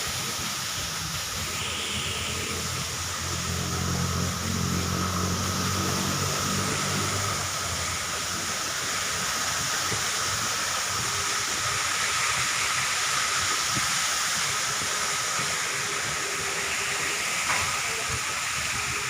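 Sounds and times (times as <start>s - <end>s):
falling water rushing: 0.0s - 19.0s
thin high tone: 1.4s - 8.2s.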